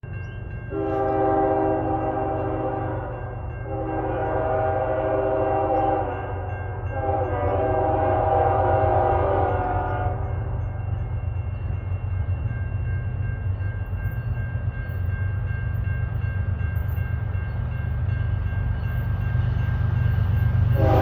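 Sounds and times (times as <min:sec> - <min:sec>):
locomotive air horn blasts: 0:00.7 - 0:06.2, 0:06.9 - 0:10.5, 0:20.8 - 0:21.0.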